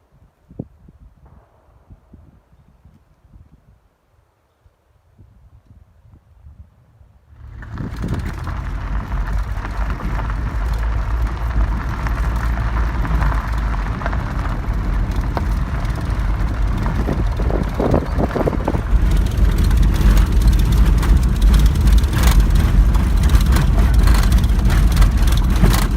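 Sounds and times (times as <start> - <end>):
vehicle engine low rumble: 7.2 - 25.9.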